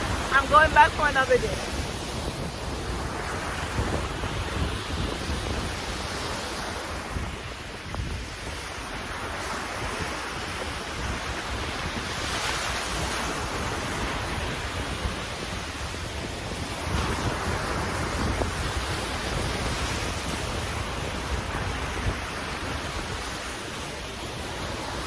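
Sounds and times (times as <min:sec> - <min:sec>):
sea waves washing in: 0:00.0 - 0:25.0
wind rumbling on microphone: 0:00.0 - 0:25.0.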